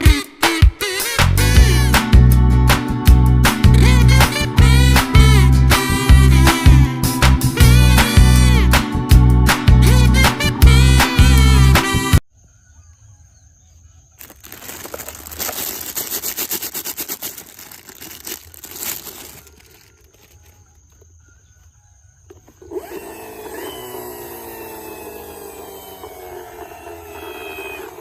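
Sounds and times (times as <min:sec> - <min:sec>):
hard plastic toys rattling: 0:14.2 - 0:20.5
toy electronic tones sliding down: 0:22.8 - 0:28.0.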